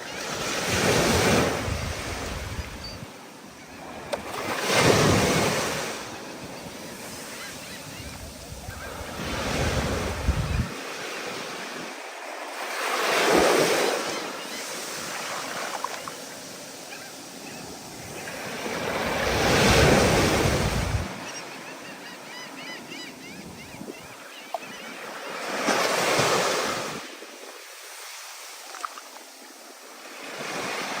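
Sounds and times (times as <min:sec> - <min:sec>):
steady surf wash: 0:00.0 - 0:21.6
wind gusting on microphone: 0:01.0 - 0:03.1, 0:07.8 - 0:10.8, 0:18.8 - 0:21.1
waves breaking: 0:03.6 - 0:21.4, 0:24.6 - 0:31.0.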